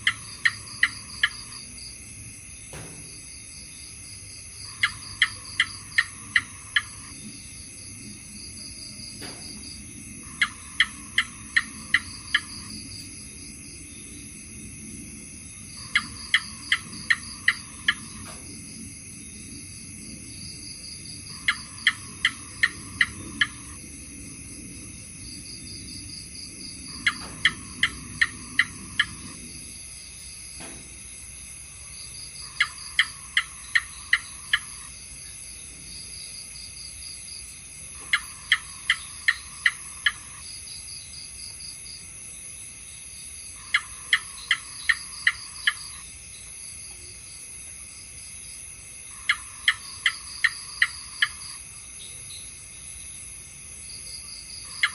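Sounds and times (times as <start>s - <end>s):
gecko chirping: 0.0s - 1.7s, 4.6s - 7.4s, 10.2s - 14.3s, 15.1s - 18.5s, 21.1s - 23.8s, 26.5s - 29.7s, 32.4s - 34.9s, 38.0s - 40.4s, 43.6s - 46.0s, 49.1s - 51.6s, 54.6s - 54.9s
high insect trill: 0.0s - 54.9s.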